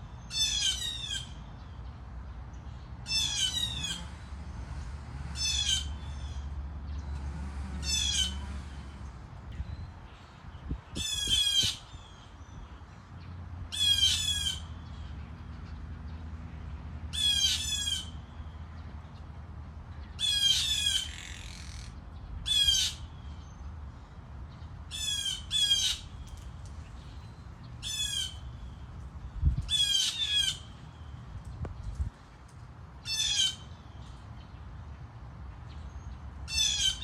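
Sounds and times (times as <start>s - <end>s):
bird squawking call: 0.3s - 1.4s, 3.1s - 4.1s, 20.2s - 23.1s.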